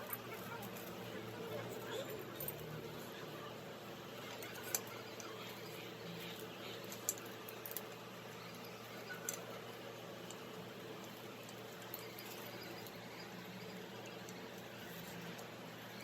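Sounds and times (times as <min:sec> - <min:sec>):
low background hum: 0:00.0 - 0:16.0.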